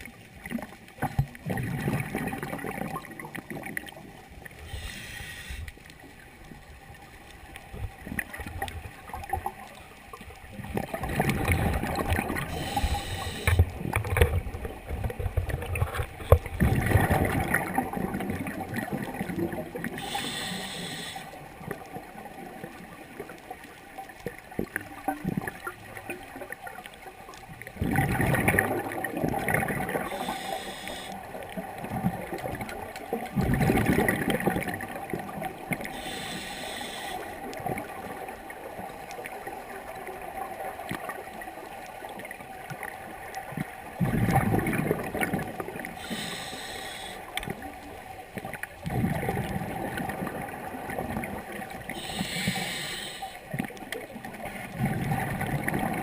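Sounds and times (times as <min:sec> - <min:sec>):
exhaled bubbles underwater: 0:00.0 - 0:56.0
hissing regulator inhalations: 0:04.6 - 0:05.7, 0:12.5 - 0:13.6, 0:20.0 - 0:21.4, 0:30.0 - 0:31.3, 0:35.9 - 0:37.4, 0:46.0 - 0:47.3, 0:52.0 - 0:53.5.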